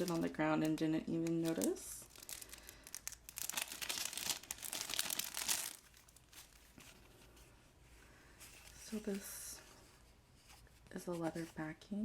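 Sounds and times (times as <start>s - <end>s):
packaging crinkling and rustling: 0.0s - 7.5s.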